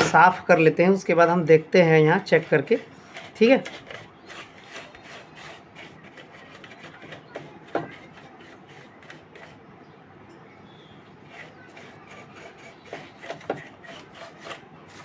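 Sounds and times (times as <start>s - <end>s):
rubbing circuit board: 2.3s - 9.6s, 11.2s - 15.0s
knock: 7.7s - 7.9s.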